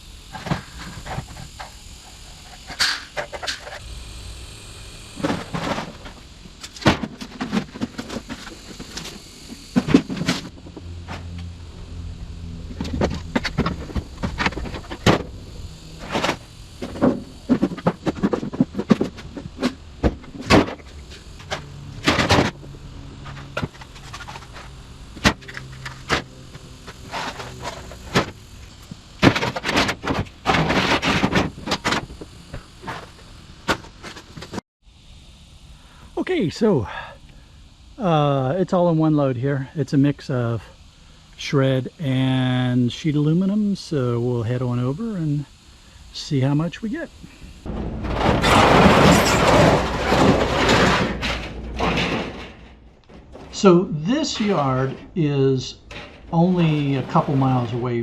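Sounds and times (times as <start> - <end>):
sheet metal clanking and rattling: 47.7 - 53.6.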